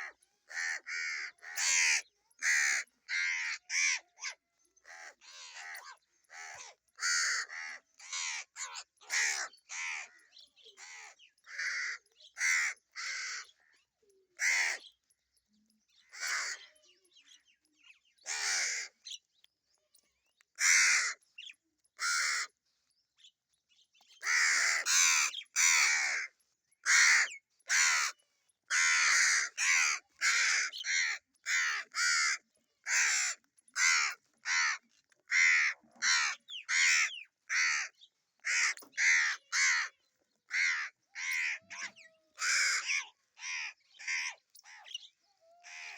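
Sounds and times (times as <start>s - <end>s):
crows cawing: 0.0s - 10.2s, 10.8s - 13.6s, 14.4s - 14.9s, 16.1s - 16.7s, 18.3s - 19.0s, 20.6s - 21.2s, 22.0s - 22.5s, 24.2s - 39.9s, 40.5s - 45.0s, 45.6s - 45.9s.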